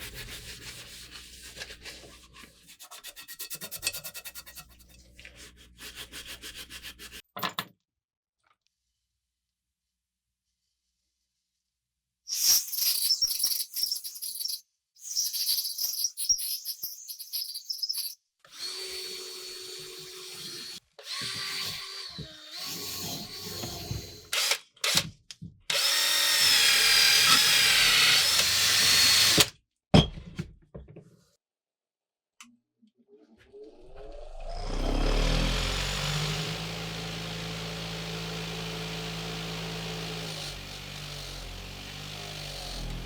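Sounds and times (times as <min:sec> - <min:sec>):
electric drill grinding metal: 0:17.4 - 0:25.1, 0:25.7 - 0:29.5, 0:33.9 - 0:43.0.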